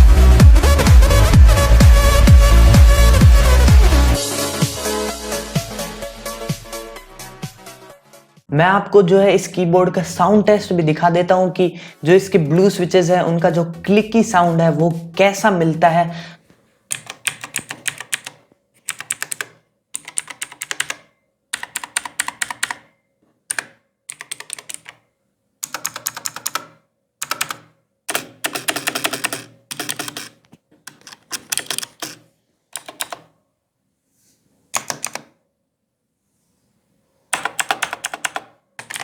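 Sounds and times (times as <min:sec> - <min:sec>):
mechanical keyboard clicks: 0:16.9 - 0:22.9, 0:23.5 - 0:25.0, 0:25.6 - 0:32.2, 0:32.8 - 0:33.3, 0:34.8 - 0:35.3, 0:37.4 - 0:39.0.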